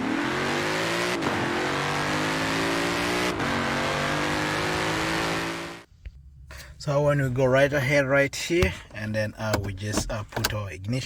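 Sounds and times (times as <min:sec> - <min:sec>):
car engine accelerating: 0:00.0 - 0:05.9.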